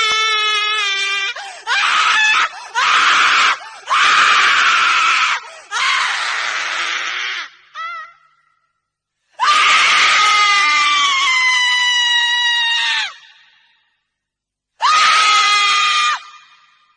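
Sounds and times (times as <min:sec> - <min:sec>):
woman screaming: 0:09.4 - 0:13.4, 0:14.8 - 0:16.7.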